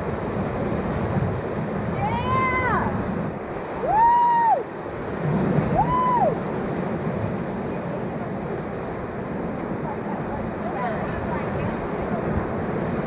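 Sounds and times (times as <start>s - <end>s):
whitewater rapids rushing: 0.0s - 13.0s
people whooping: 3.8s - 4.7s, 5.7s - 6.4s.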